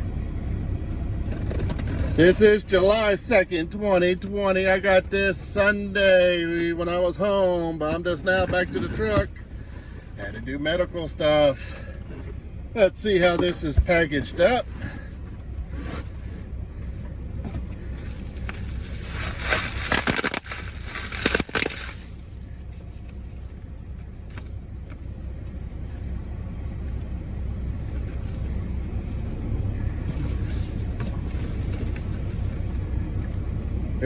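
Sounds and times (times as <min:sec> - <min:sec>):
steady low rumble: 0:00.0 - 0:34.0
packing material crackling and tearing: 0:17.9 - 0:22.3.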